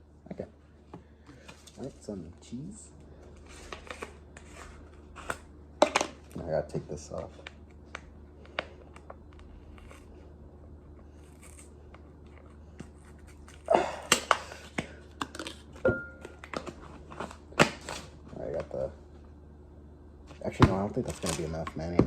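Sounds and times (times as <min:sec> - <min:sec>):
packaging crinkling and tearing: 0:11.1 - 0:18.6, 0:21.0 - 0:21.7.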